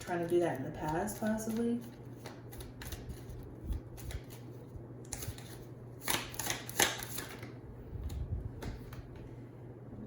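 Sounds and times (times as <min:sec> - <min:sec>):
cards being shuffled: 0:00.0 - 0:07.6.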